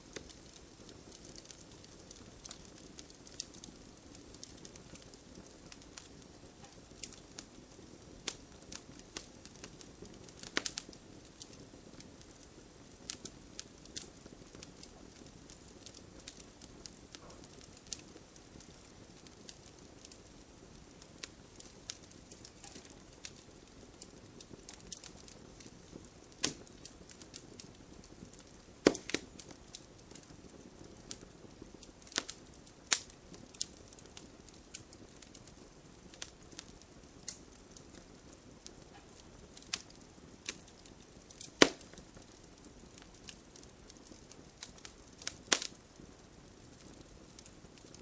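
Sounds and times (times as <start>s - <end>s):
faint hiss of rain: 0.0s - 48.0s
sharp snaps of fire: 0.0s - 48.0s
wood fire crackling and popping: 0.0s - 48.0s.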